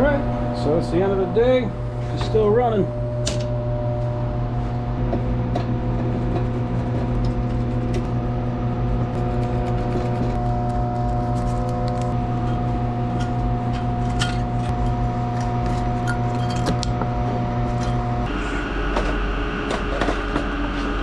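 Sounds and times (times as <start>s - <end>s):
different machine noise: 0.0s - 21.0s
machine hum with clicking: 0.0s - 21.0s.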